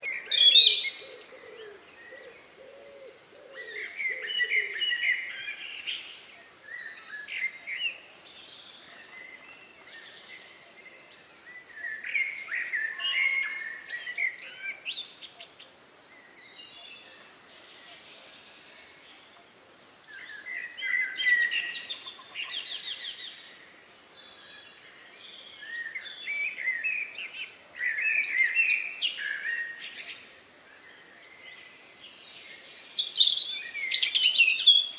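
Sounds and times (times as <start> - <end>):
songbirds chirping: 0.0 - 34.9.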